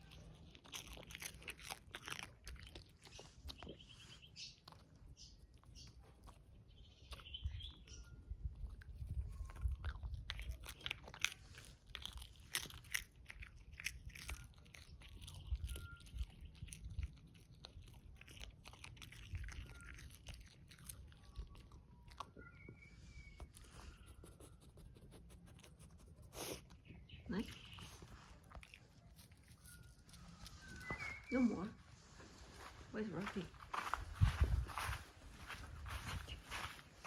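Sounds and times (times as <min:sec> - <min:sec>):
dog crunching a hard treat: 0:00.0 - 0:03.8, 0:08.6 - 0:22.3.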